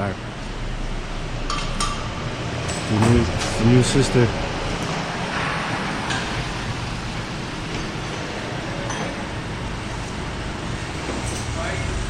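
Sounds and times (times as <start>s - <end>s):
parking garage noise: 0.0s - 12.0s.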